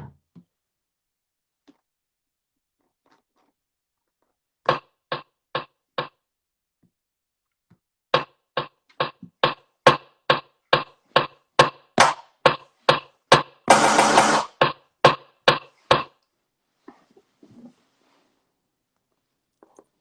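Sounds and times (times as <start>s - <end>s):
sharp knocks: 8.2s - 16.1s.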